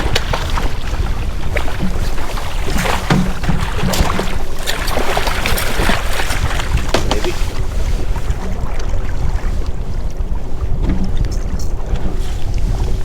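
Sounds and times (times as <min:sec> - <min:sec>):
boat engine rumbling: 0:00.0 - 0:13.0
water noise: 0:00.0 - 0:13.0
wind: 0:00.0 - 0:13.0
light knocks: 0:06.8 - 0:07.7.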